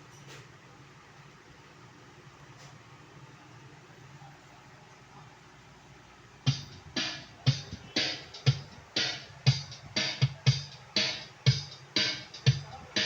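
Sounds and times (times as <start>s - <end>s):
drum machine beat: 6.4s - 13.0s.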